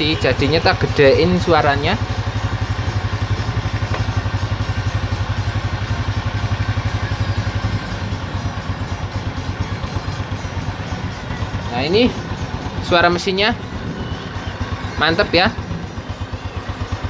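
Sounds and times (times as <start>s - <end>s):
motorcycle engine idling: 0.0s - 17.0s.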